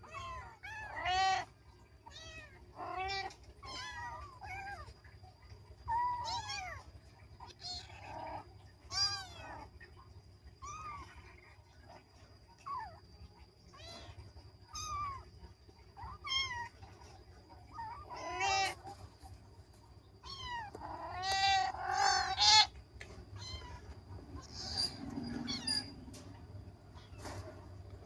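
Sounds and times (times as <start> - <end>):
kitten meowing: 20.2 - 22.7.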